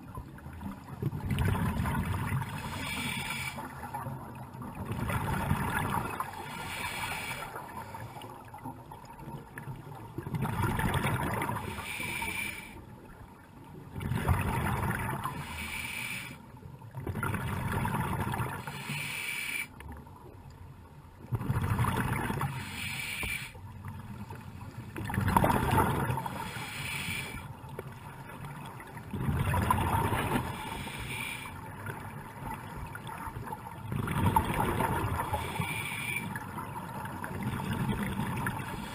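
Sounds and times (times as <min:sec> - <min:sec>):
exhaled bubbles rushing: 0:01.0 - 0:02.6, 0:10.2 - 0:11.6, 0:13.9 - 0:15.3, 0:21.3 - 0:22.7, 0:25.0 - 0:26.4, 0:29.1 - 0:30.5, 0:33.8 - 0:35.4
regulator inhale hiss: 0:02.5 - 0:03.8, 0:06.4 - 0:08.3, 0:11.6 - 0:12.8, 0:15.2 - 0:16.4, 0:18.6 - 0:19.8, 0:22.5 - 0:23.6, 0:26.2 - 0:27.6, 0:30.4 - 0:31.6, 0:35.3 - 0:36.4, 0:38.7 - 0:38.9.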